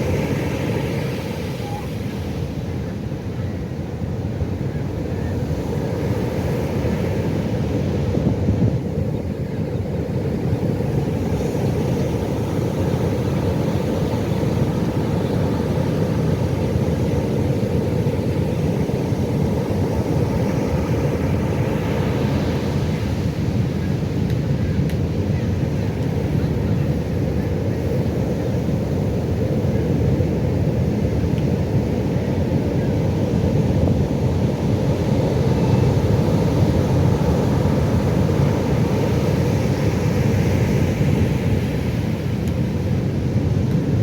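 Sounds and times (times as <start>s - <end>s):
hissing wash of surf: 0.0s - 3.0s
breaking waves rumbling: 4.4s - 44.0s.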